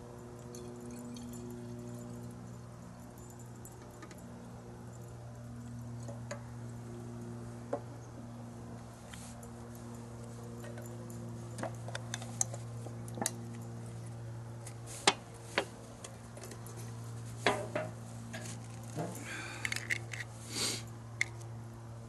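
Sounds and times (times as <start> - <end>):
steady low hum: 0.0 - 22.0
metal parts clicking and clinking: 16.0 - 20.4.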